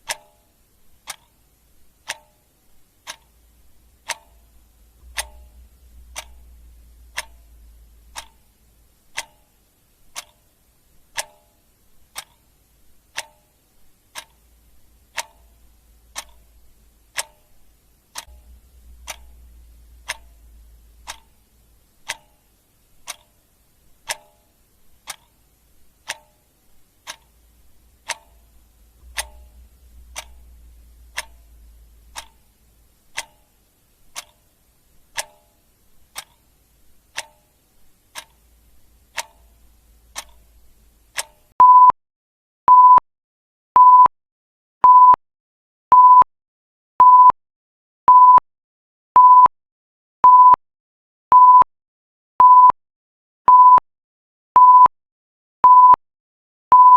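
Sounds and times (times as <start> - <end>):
faint low hum: 0.0 - 41.2
clock ticking: 0.0 - 41.9.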